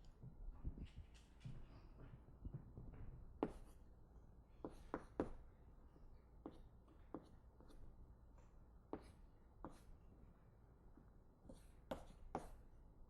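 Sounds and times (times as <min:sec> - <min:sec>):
low room hum: 0:00.0 - 0:13.0
writing on a board: 0:03.4 - 0:03.9, 0:04.6 - 0:05.5, 0:06.4 - 0:08.0, 0:08.9 - 0:10.0, 0:11.4 - 0:12.7.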